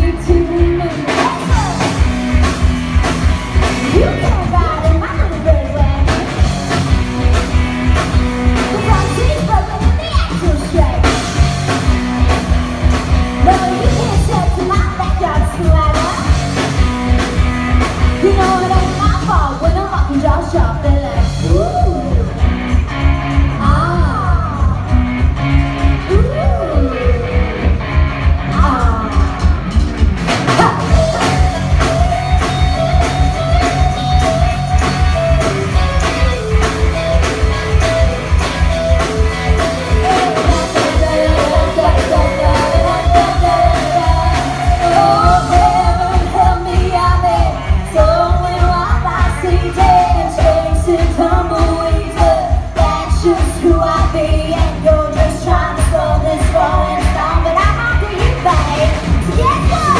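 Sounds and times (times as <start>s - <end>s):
rock band playing: 0.0s - 59.9s
person singing: 39.7s - 59.9s.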